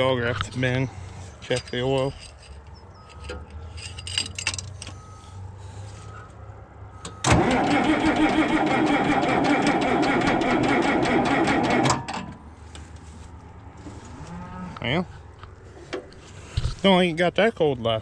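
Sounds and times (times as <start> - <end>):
tractor engine cranking: 0.0 - 6.2, 7.0 - 12.8.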